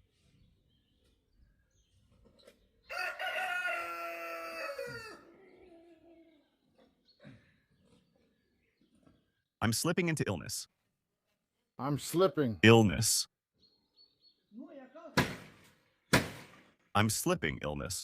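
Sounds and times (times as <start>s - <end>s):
rooster crowing: 2.9s - 5.3s.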